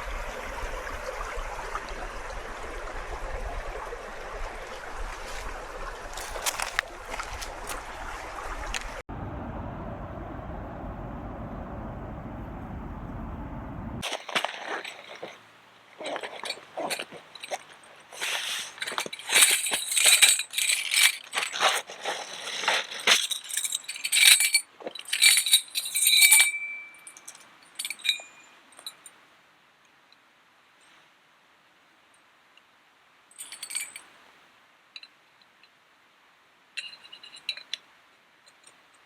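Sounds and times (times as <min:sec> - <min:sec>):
steady rushing noise: 0:09.1 - 0:14.0.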